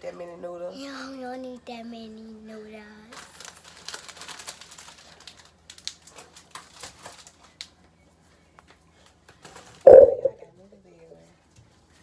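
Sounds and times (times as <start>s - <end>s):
dry spaghetti clicking: 3.2s - 7.7s.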